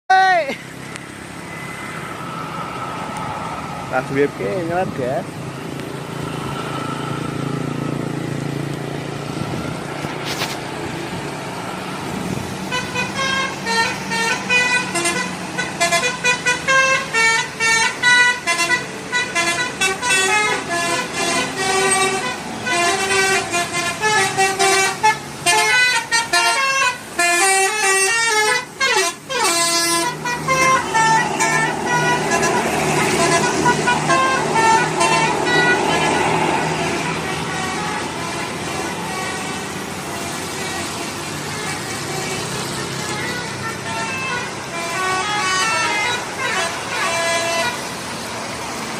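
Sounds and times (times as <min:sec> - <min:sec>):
bus engine running: 0:00.4 - 0:48.9
bus horn melody: 0:12.6 - 0:48.0.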